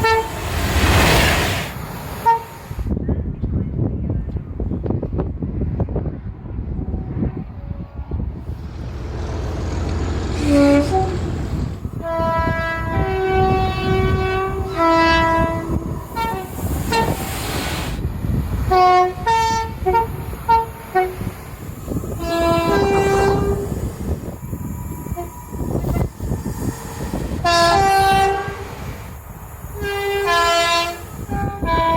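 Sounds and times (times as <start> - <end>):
two-tone train horn: 0.0 - 0.6, 2.2 - 2.8, 10.3 - 17.2, 18.7 - 21.4, 22.2 - 23.9, 25.2 - 28.8, 29.8 - 31.9
loud rush of noise: 0.0 - 2.9
train rumbling: 0.0 - 31.9.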